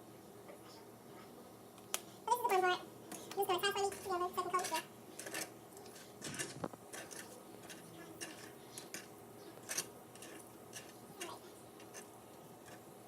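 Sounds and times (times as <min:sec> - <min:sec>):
utensils clicking on cookware: 0:02.5 - 0:12.9.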